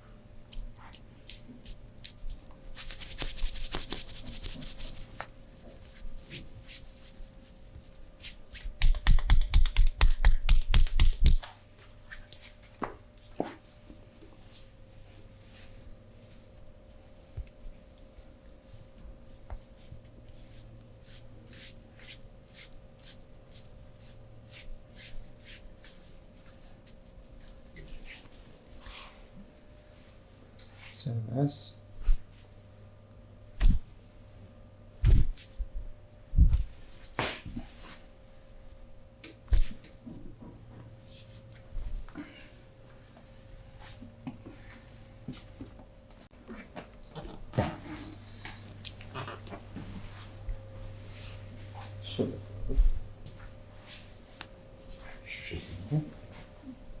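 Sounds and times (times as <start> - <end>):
palms rubbing on skin: 0.5 - 10.0, 19.7 - 28.2
hands patting and pounding: 8.7 - 11.5.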